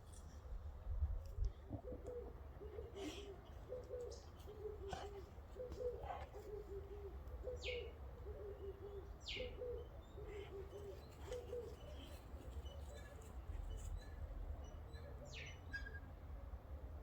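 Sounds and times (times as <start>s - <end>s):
dove cooing: 1.6s - 12.2s.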